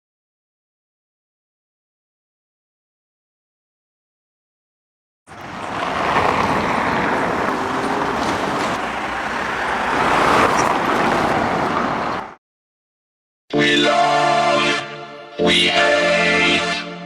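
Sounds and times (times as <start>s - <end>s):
tyres on gravel: 5.3s - 12.3s.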